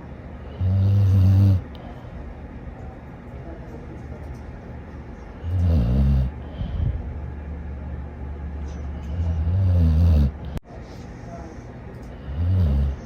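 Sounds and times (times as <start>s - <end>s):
dog snoring: 0.5s - 1.7s, 5.4s - 6.7s, 9.0s - 10.6s, 12.2s - 13.0s
dog breathing: 5.3s - 7.2s.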